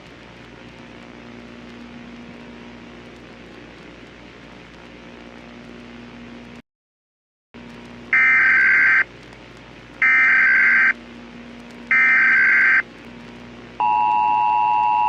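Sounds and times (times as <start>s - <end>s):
harsh data-tone bursts: 8.2s - 9.0s, 10.0s - 11.0s, 11.9s - 12.8s.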